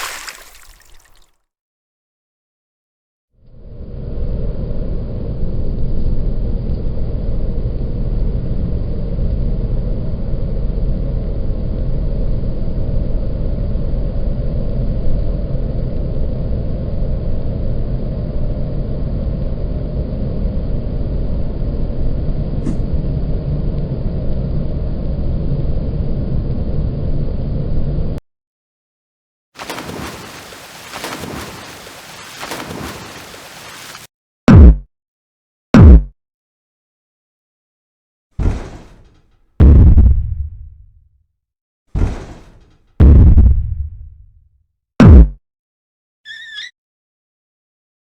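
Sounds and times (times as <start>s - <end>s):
low bass rumble: 39.6s - 40.9s, 43.0s - 44.3s.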